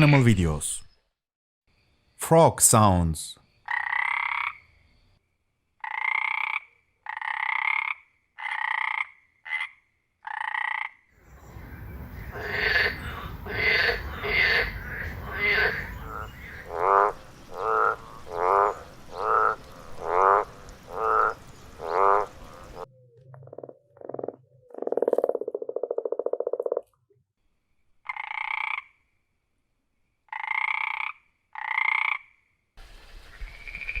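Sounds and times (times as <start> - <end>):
frogs croaking: 3.4 - 5.2, 5.8 - 26.9, 28.0 - 29.2, 30.3 - 32.6.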